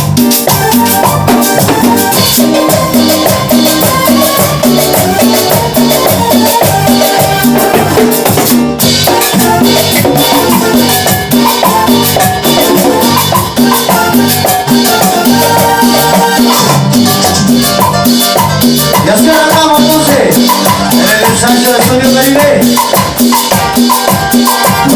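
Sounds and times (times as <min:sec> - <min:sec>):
instrumental salsa music: 0:00.0 - 0:24.9
percussion rhythm: 0:00.0 - 0:24.9.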